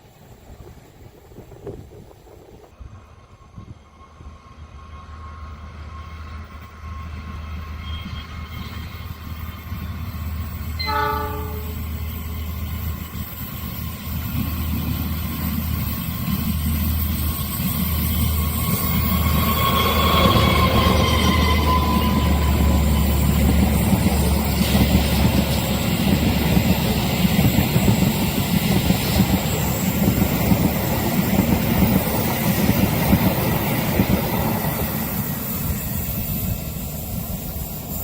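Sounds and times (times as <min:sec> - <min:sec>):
train approaching: 0:00.0 - 0:38.0
train horn blast: 0:10.7 - 0:12.1.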